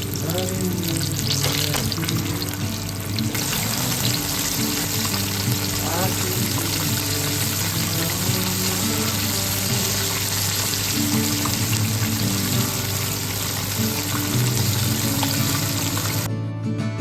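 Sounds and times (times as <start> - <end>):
chicken frying in hot oil: 0.0 - 16.3.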